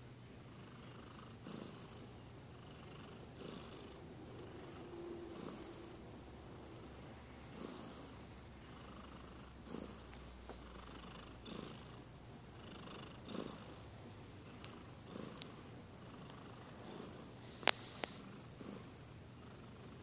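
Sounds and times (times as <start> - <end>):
cat snoring softly: 0.5 - 20.0
faint click: 17.6 - 18.2.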